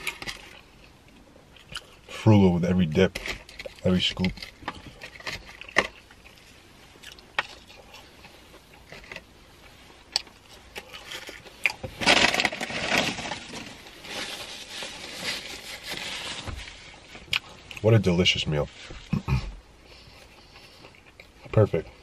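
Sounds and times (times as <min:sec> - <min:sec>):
rustling: 0:03.0 - 0:17.7
food packaging crinkling: 0:10.2 - 0:16.6.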